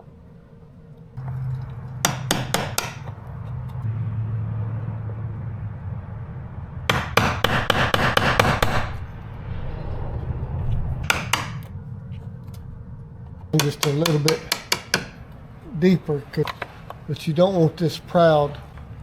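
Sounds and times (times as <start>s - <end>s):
hammer tapping chisel into wood: 2.0s - 3.1s, 6.9s - 8.8s, 11.1s - 11.7s, 13.6s - 15.2s.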